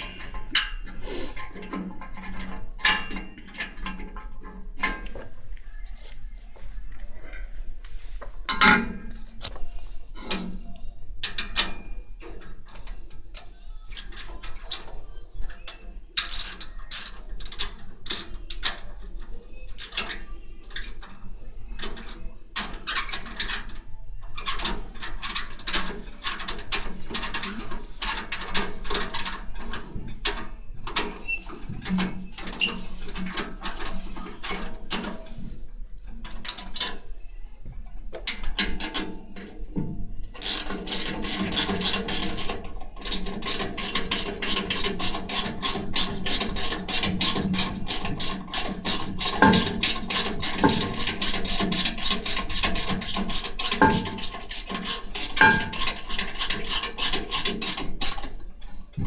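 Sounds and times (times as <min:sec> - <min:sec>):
fast ratcheting clicks: 0:40.4 - 0:58.2
metal clinks and knocks: 0:40.4 - 0:58.3.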